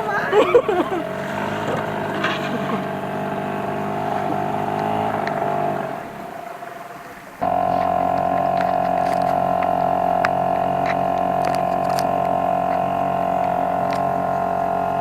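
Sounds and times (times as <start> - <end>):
boat engine running: 0.0 - 15.0
faint ticks: 7.4 - 14.7.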